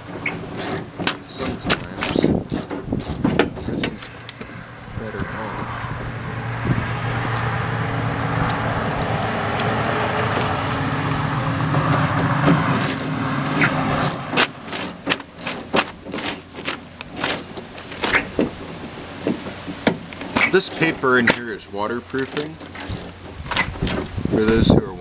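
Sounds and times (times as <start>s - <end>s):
light metallic rattles: 0.0s - 4.5s, 12.6s - 13.2s, 13.9s - 21.6s, 22.2s - 24.6s.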